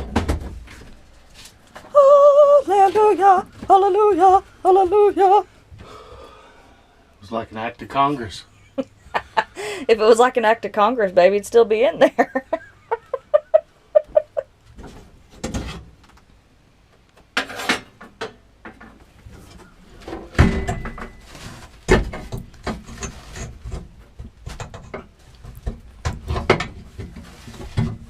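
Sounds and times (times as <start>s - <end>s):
hard objects knocking and scraping: 17.2s - 28.0s.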